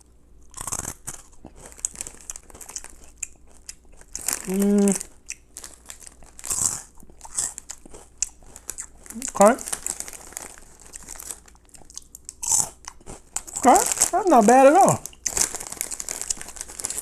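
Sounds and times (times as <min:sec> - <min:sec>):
person chewing crunchy snacks: 0:00.4 - 0:17.0
plastic snack packet crinkling: 0:00.6 - 0:17.0
person humming: 0:04.4 - 0:05.0, 0:09.1 - 0:09.6, 0:13.6 - 0:15.0.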